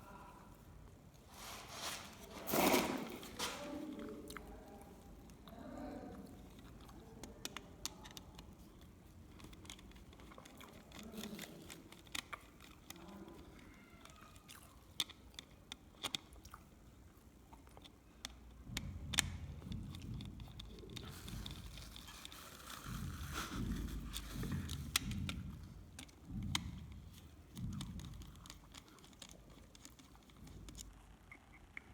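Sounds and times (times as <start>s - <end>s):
faint background murmur: 0.0s - 14.9s.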